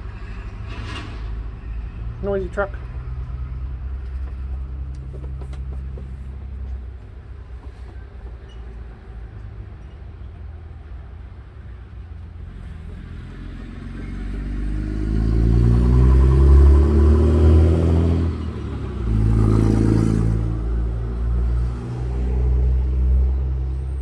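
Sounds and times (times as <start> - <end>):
truck engine passing: 12.5 - 24.0.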